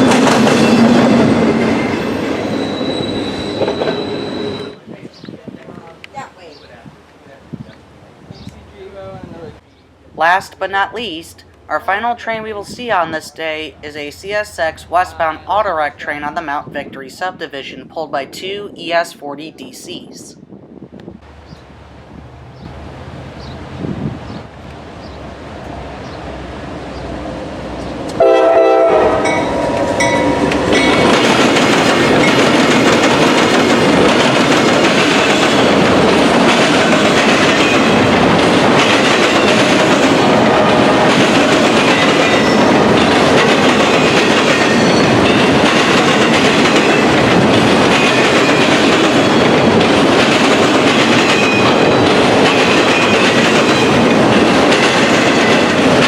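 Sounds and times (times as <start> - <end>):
wheels clattering over rail crossing: 0.0 - 4.7, 29.3 - 56.0
train rolling past: 0.0 - 18.0, 20.6 - 56.0
train horn: 28.1 - 30.1.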